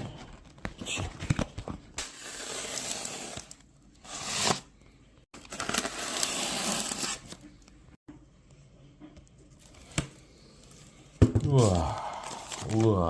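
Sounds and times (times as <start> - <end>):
packaging tearing and rustling: 5.4 - 7.4, 11.5 - 13.0.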